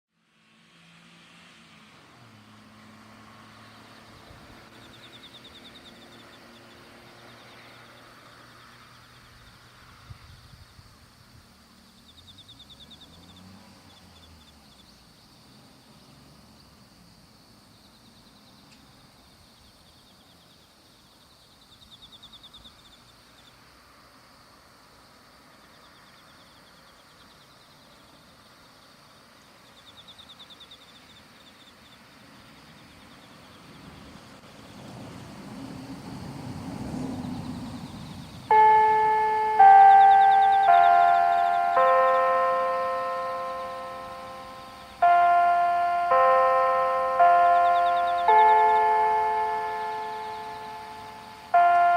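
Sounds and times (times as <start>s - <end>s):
high pulsed trills: 38.5s - 51.9s.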